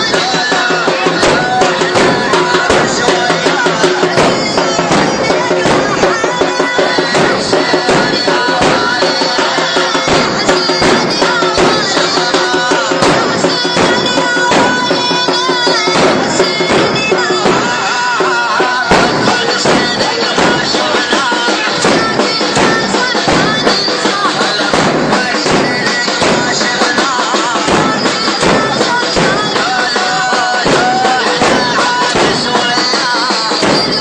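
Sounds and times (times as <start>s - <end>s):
fast steady drum beat: 0.0s - 34.0s
voice chanting: 0.0s - 34.0s.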